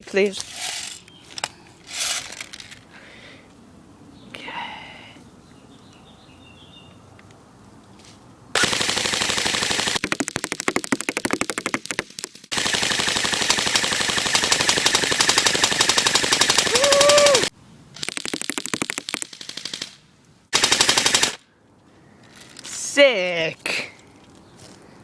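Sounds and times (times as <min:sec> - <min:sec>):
airsoft gun firing: 0:08.6 - 0:17.4, 0:18.0 - 0:21.4.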